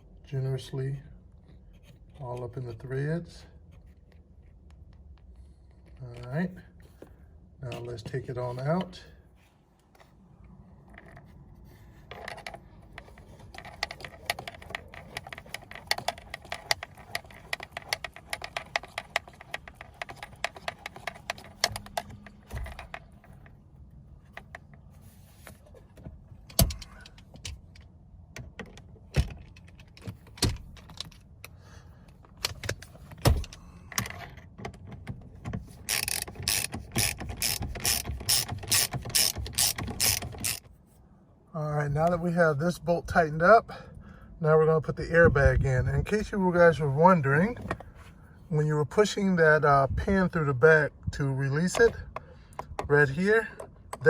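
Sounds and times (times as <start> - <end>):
ratchet wrench clicking: 35.8 - 40.6.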